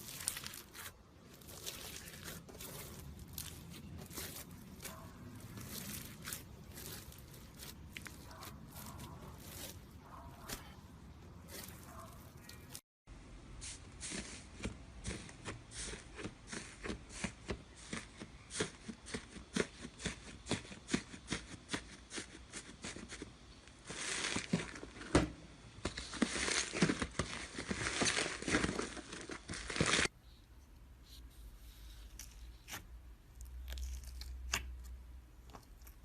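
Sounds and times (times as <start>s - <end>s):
slime crackling: 0.0s - 10.8s, 11.4s - 12.8s.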